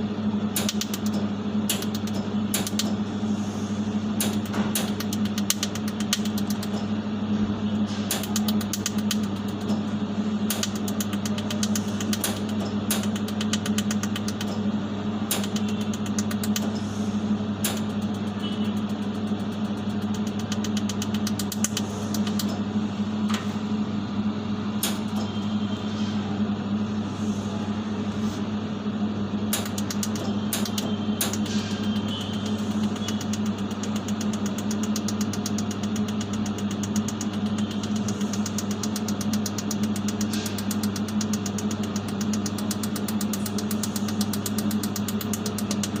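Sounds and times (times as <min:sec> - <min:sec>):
low electrical hum: 0:00.0 - 0:46.0
laser pulses sharp clicks: 0:00.5 - 0:03.0, 0:04.2 - 0:06.8, 0:08.1 - 0:09.8, 0:10.5 - 0:14.6, 0:15.3 - 0:16.8, 0:17.6 - 0:22.6, 0:29.5 - 0:46.0.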